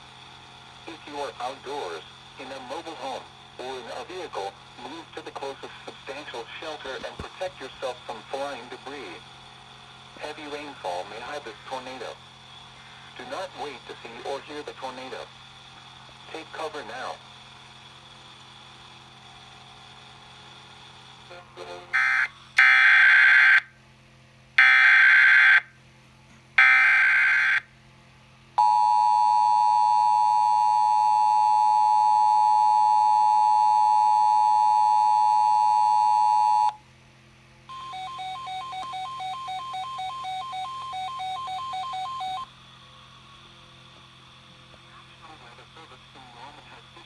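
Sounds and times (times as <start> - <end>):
two-tone attention signal: 28.6 - 36.8, 37.7 - 42.5.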